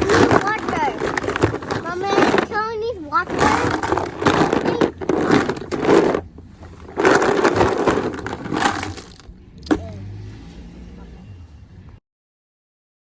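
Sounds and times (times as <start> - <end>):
plastic toys clattering: 0.0 - 10.0.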